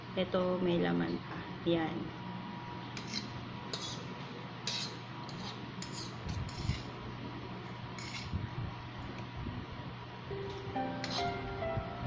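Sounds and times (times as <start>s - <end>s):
utensils scraping a plate: 3.0s - 7.0s, 7.7s - 8.4s, 10.4s - 11.5s.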